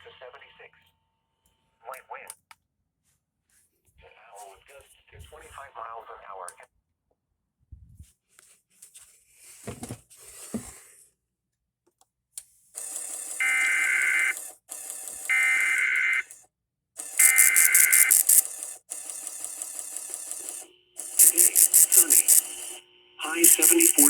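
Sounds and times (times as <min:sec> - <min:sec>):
radio hiss: 0:04.1 - 0:06.5, 0:17.2 - 0:18.4, 0:21.0 - 0:24.0
digital data tone squawks: 0:17.2 - 0:18.4, 0:21.0 - 0:24.0.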